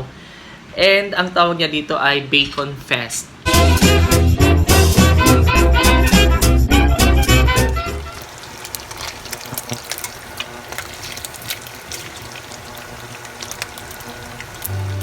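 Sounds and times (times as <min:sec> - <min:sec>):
bacon sizzling in a frying pan: 0:07.6 - 0:15.0.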